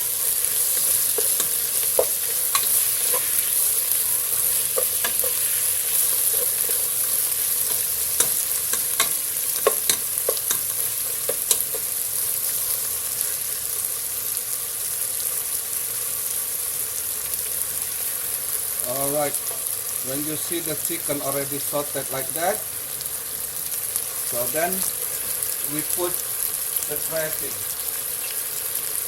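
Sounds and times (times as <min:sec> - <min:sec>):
chicken sizzling in a hot pan: 0:00.0 - 0:29.0
utensil scraping a pan: 0:00.5 - 0:11.9.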